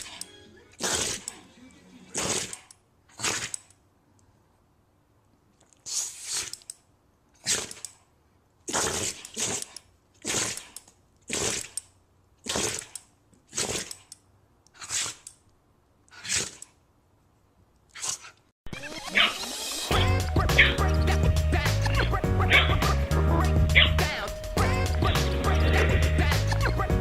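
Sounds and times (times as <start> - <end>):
dog sneezing: 2.1 - 3.6, 5.8 - 6.6, 7.4 - 7.8, 14.8 - 15.2, 16.1 - 16.6.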